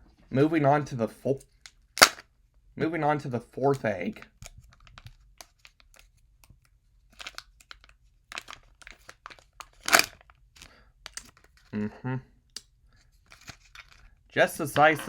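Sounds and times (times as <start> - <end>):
foil and plastic packaging crinkling: 7.1 - 11.7.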